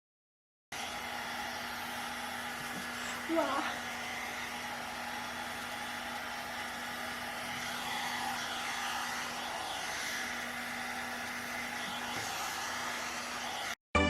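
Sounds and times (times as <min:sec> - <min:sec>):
hair dryer blowing air: 0:00.7 - 0:13.8.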